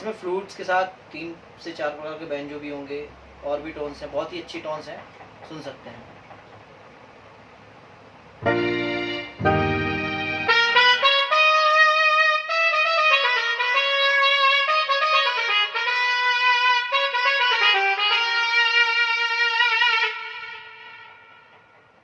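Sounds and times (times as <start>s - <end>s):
keyboard trumpet melody: 8.4s - 22.0s.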